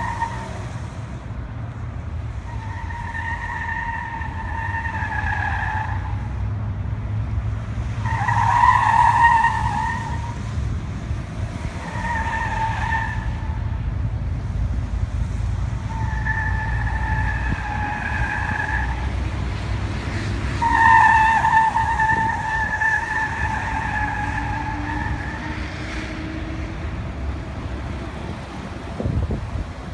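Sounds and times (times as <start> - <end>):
road rumble: 0.0 - 29.9
high whistle from wheels: 20.6 - 25.5.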